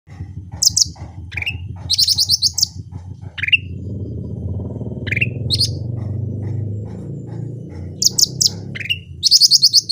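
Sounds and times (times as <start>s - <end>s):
steady low hum: 0.1s - 9.9s
bird singing loud sharp chirps: 0.6s - 6.2s, 7.8s - 9.9s.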